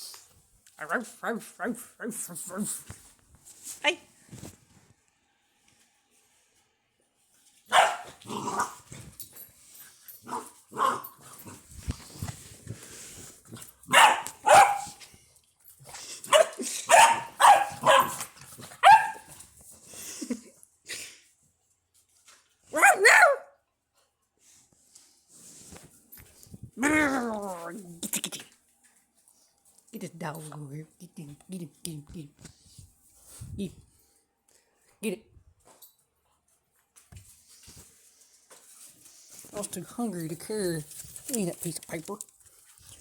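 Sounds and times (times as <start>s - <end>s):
puppies barking: 7.7s - 8.8s, 13.9s - 15.0s, 16.3s - 19.3s.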